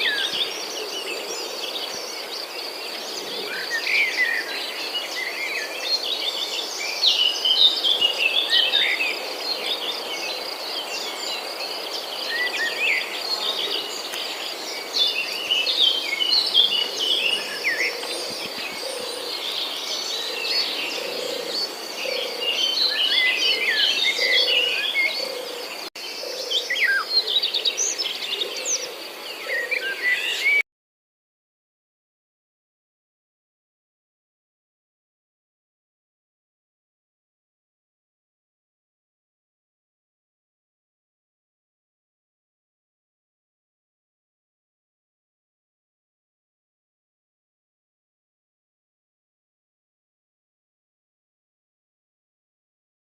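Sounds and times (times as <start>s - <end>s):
small birds chirping: 0.0s - 30.6s.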